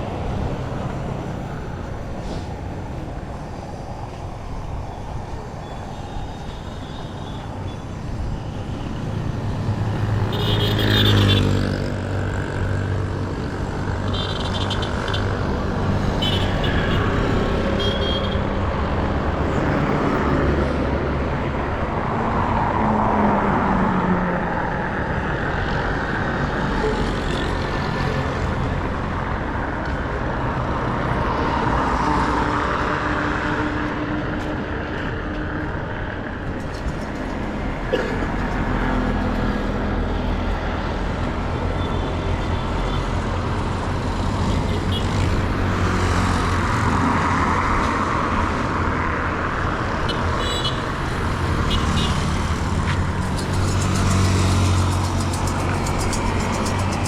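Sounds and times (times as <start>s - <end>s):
motor vehicles passing: 8.0s - 57.0s
loud engine going by: 37.2s - 57.0s.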